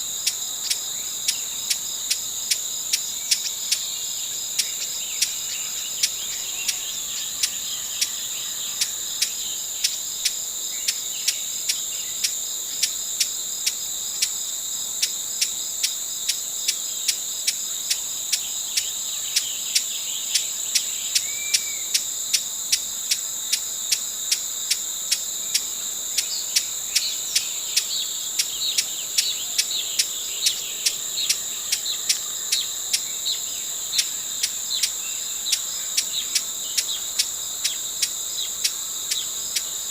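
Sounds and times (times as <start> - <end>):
insect chorus: 0.0 - 39.9
dry sharp ticks: 8.8 - 14.4.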